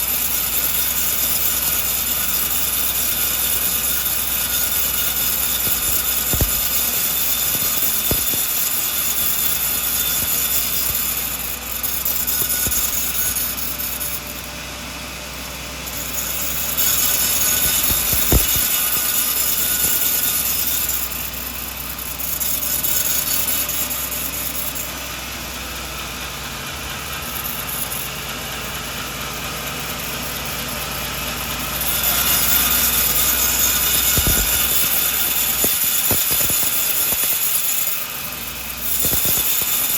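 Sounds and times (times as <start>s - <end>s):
saw cutting through log: 0.0s - 39.9s
sharp knocks: 17.4s - 19.1s, 34.0s - 34.8s.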